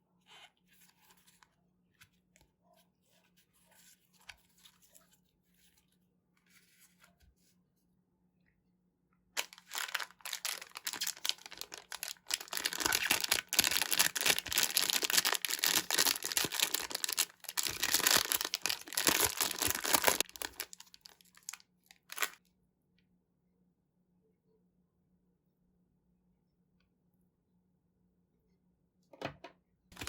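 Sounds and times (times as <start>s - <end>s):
plastic packaging crinkling: 9.4s - 22.4s.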